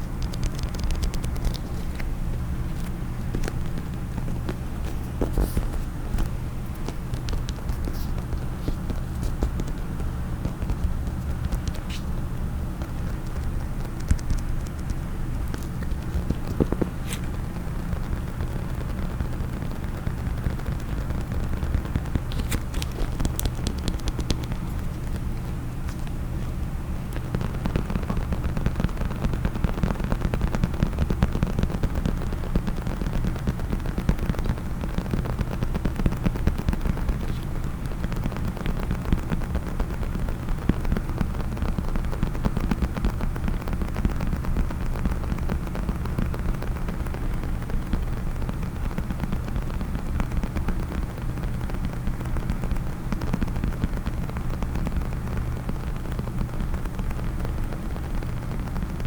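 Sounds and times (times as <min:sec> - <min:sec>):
fingers tapping and scratching on case: 0:00.0 - 0:59.0.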